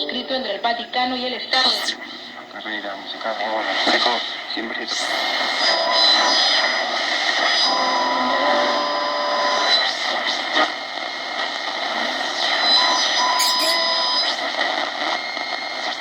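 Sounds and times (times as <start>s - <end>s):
radio static hiss: 1.2s - 16.0s
radio crackles: 1.3s - 16.0s
thin whistling radio tones: 4.8s - 10.2s, 12.2s - 16.0s.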